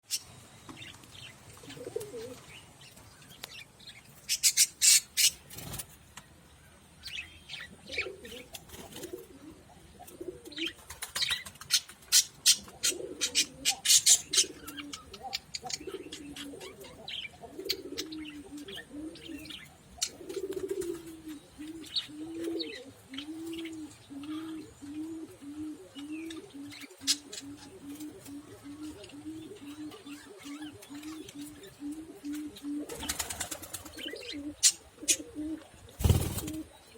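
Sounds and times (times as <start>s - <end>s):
budgerigars chirping: 4.3s - 5.4s.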